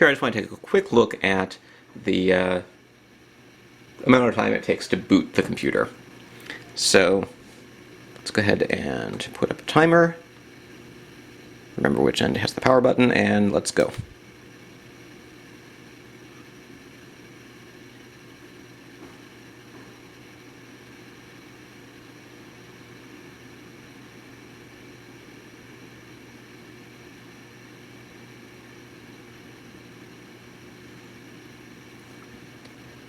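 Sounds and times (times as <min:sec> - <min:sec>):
laptop whir and hum: 0:00.0 - 0:33.0.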